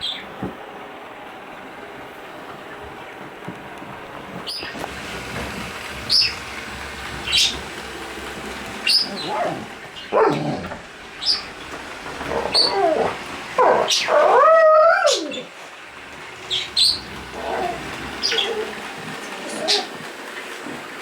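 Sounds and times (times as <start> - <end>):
dog whining: 8.8 - 11.5, 12.2 - 15.5, 16.5 - 18.8, 19.4 - 20.0.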